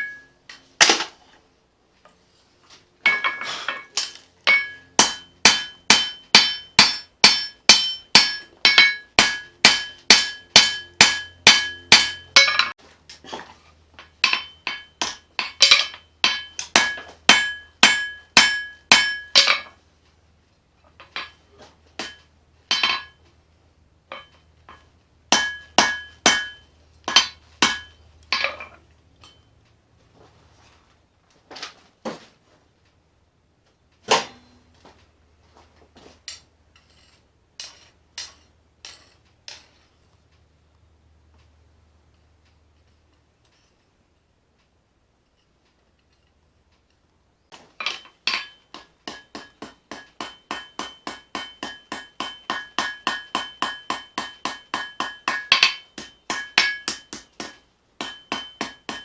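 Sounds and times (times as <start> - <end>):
hammer blows ringing on steel: 4.5 - 12.8, 14.2 - 19.7, 24.1 - 28.1, 48.0 - 59.0.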